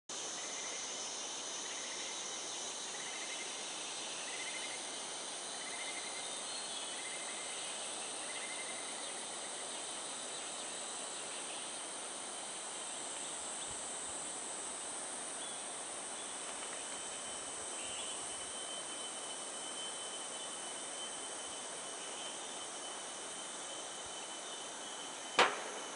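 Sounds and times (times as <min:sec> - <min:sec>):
high-pitched insect buzzing drone: 0:16.8 - 0:25.9.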